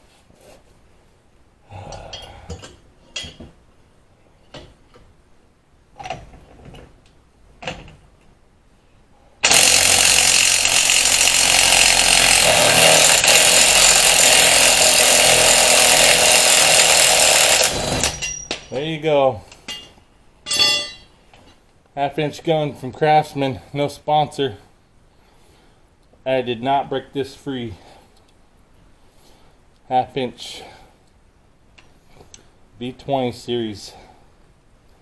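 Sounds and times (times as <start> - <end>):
impact wrench hammering: 9.4 - 18.8, 20.5 - 21.1
light metal clinks: 19.5 - 21.1.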